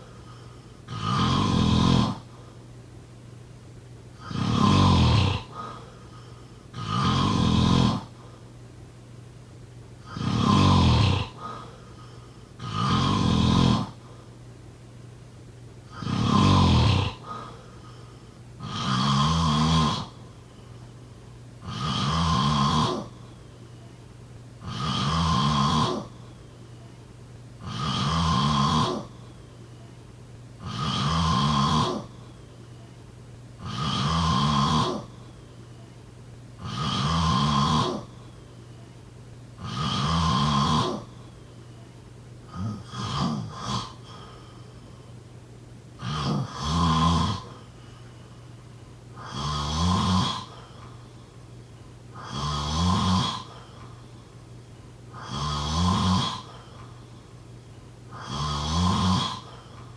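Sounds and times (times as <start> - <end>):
person snoring: 0.0 - 2.3, 4.2 - 8.2, 10.0 - 14.0, 15.9 - 20.8, 21.6 - 23.4, 24.6 - 26.4, 27.6 - 29.4, 30.6 - 32.3, 33.6 - 35.4, 36.6 - 38.4, 39.6 - 41.2, 42.5 - 44.9, 46.0 - 48.0, 49.2 - 50.9, 52.1 - 54.0, 55.1 - 57.2, 58.1 - 59.9.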